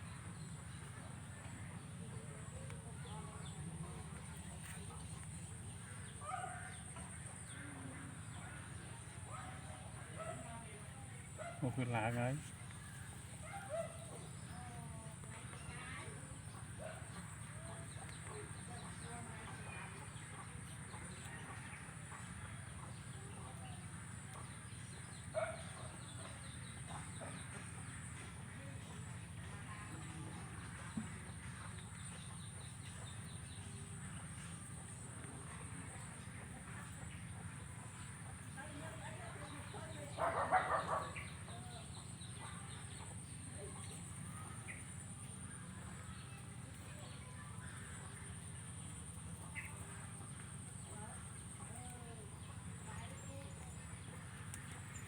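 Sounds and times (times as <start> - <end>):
cicadas droning: 0.0 - 55.0
cicadas buzzing: 31.2 - 55.0
bird calls: 36.0 - 55.0
animal calls: 39.6 - 43.2.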